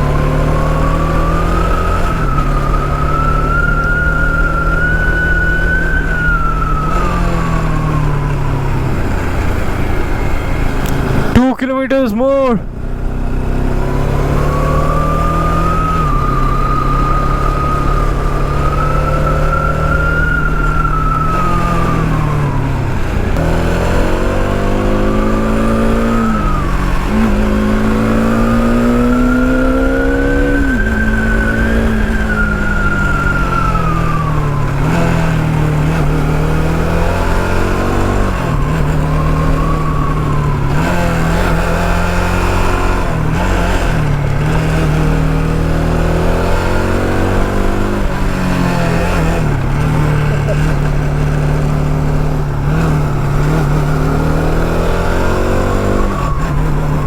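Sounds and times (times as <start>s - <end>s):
motorcycle engine revving: 0.0s - 11.6s, 12.6s - 57.0s.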